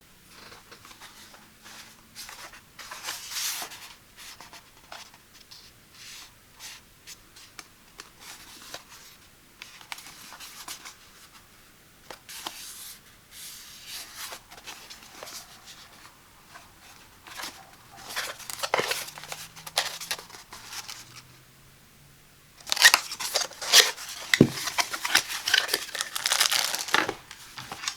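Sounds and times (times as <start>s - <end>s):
packaging rustling and scraping: 13.8s - 21.2s, 22.6s - 27.9s.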